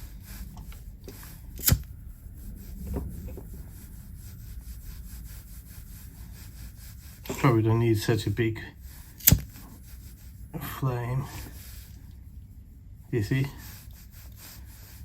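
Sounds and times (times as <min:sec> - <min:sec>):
lighter flame rumbling: 0:00.0 - 0:15.0
sharp click: 0:01.6 - 0:01.8, 0:09.2 - 0:09.5.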